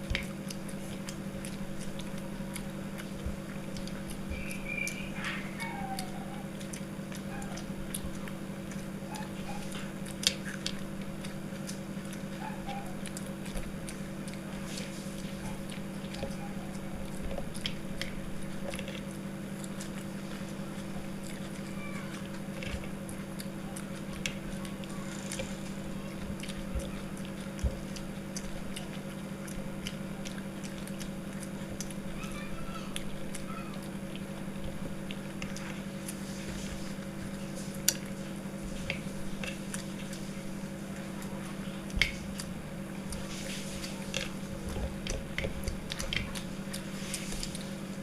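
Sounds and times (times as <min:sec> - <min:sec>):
people chewing food: 0:00.0 - 0:48.0
small clicks and mouth sounds: 0:00.0 - 0:48.0
steady low hum: 0:00.0 - 0:48.0.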